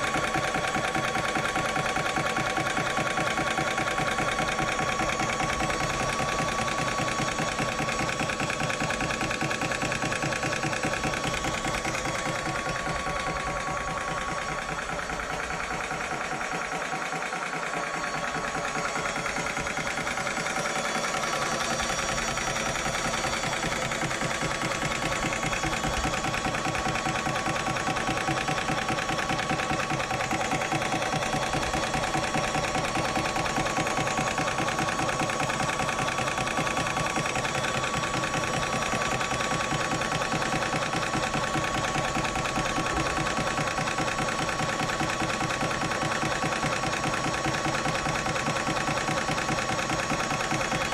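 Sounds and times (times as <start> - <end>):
compressor chugging and whining: 0.0 - 50.9.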